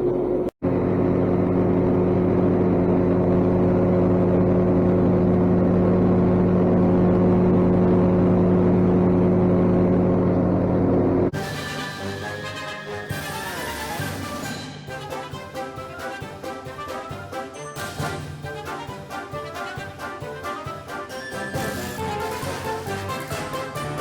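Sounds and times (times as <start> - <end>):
music: 11.3 - 24.0.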